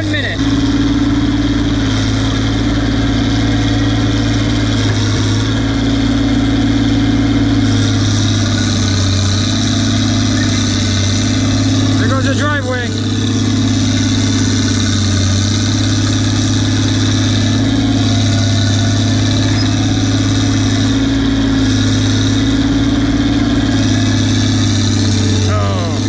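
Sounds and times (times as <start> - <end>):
dozer diesel engine running: 0.0 - 26.0.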